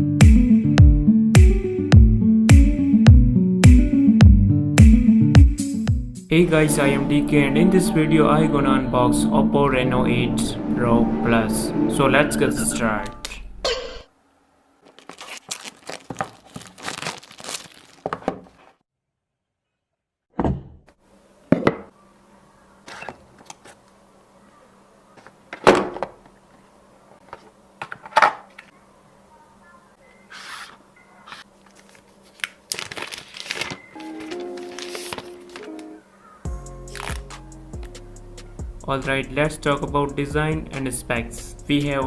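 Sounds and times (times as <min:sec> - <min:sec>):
packaging rustling and tearing: 0:14.8 - 0:18.8, 0:31.3 - 0:36.0, 0:36.8 - 0:37.3.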